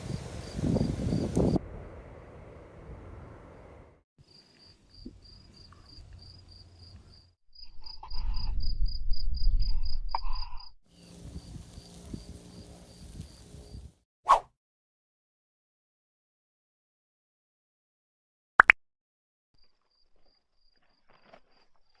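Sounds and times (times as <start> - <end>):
crickets chirping: 0.0 - 13.9, 19.6 - 22.0.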